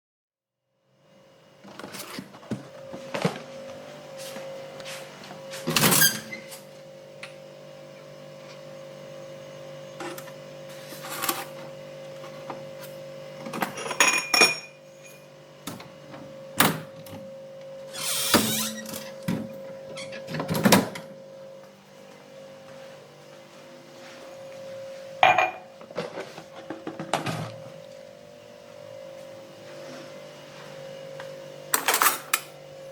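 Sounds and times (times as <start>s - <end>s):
steady low hum: 6.4s - 32.9s
cupboard door opening and shutting: 18.0s - 21.1s
glass set down: 25.2s - 25.6s.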